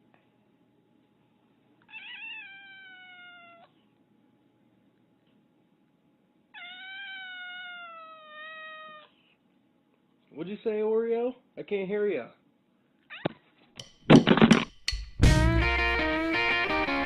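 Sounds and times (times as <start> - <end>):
cat meowing: 1.9 - 3.8, 6.6 - 9.2, 13.1 - 13.5.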